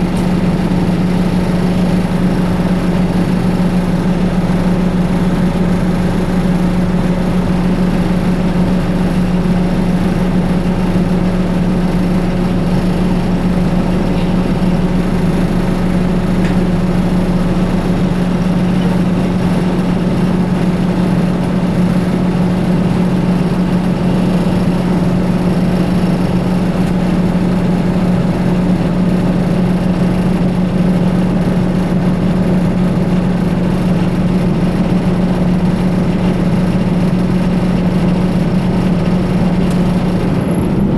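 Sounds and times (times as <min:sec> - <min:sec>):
bus diesel engine droning: 0:00.0 - 0:40.9.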